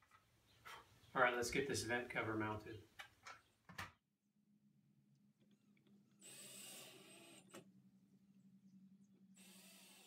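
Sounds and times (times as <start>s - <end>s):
power drill driving a screw: 9.4s - 10.0s.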